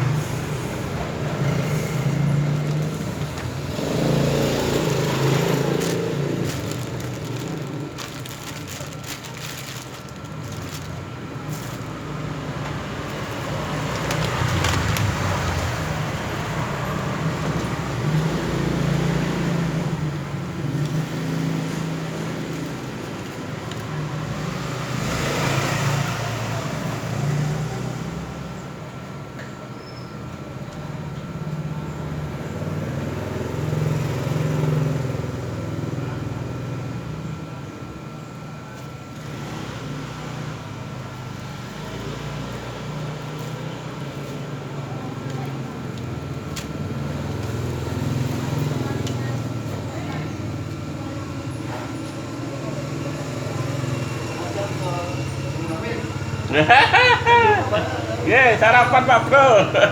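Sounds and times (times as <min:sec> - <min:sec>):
road traffic passing: 0:00.0 - 0:59.9.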